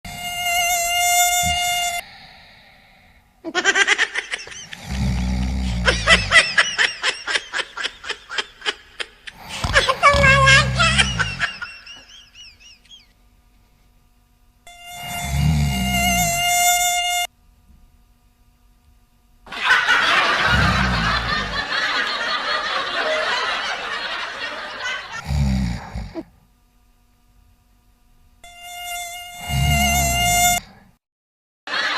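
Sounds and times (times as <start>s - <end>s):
mosquito buzz: 0.0s - 2.3s, 4.0s - 7.9s, 9.3s - 13.2s, 14.6s - 17.4s, 25.0s - 26.4s, 28.4s - 30.8s
high-pitched snickering laughter: 3.4s - 13.1s, 19.5s - 25.2s
low snore: 4.7s - 6.3s, 15.0s - 16.4s, 20.4s - 21.6s, 25.2s - 26.3s, 29.4s - 30.9s.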